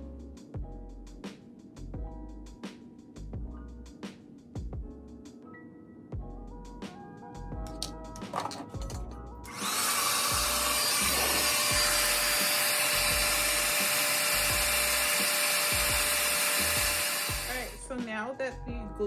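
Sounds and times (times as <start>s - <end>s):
background music with steady beat: 0.0s - 19.0s
hair dryer blowing: 9.5s - 17.8s.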